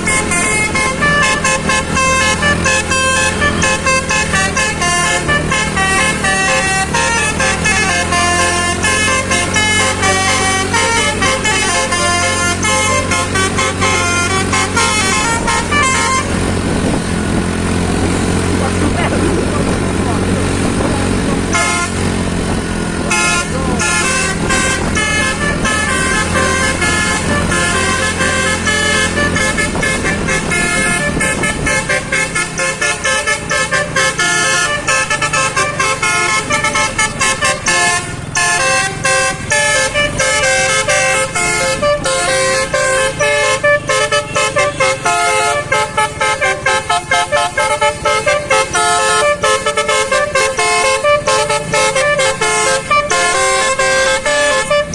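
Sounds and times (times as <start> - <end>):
musical air horn melody: 0.0 - 19.1, 19.8 - 54.9
bus engine running: 0.0 - 54.9.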